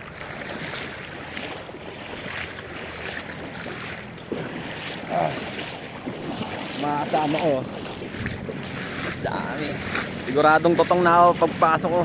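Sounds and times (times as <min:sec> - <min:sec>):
river water running: 0:00.0 - 0:12.0
wind noise on microphone: 0:07.6 - 0:10.9.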